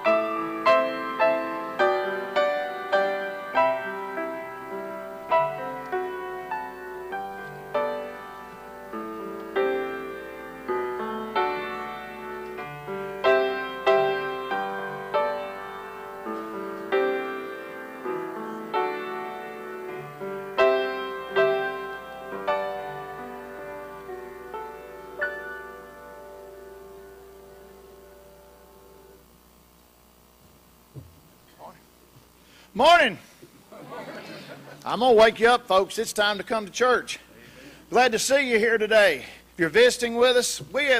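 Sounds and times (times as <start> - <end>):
solo piano slow piece: 0.0 - 29.4.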